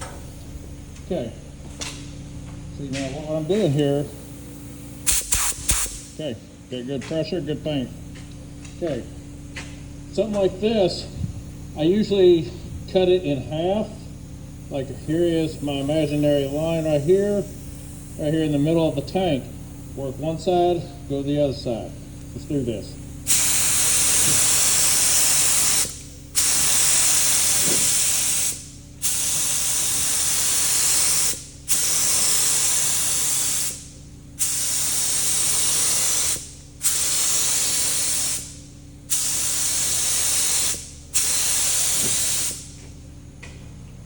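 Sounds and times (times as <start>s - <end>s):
paint spray gun hissing: 3.3s - 6.2s, 11.3s - 42.9s.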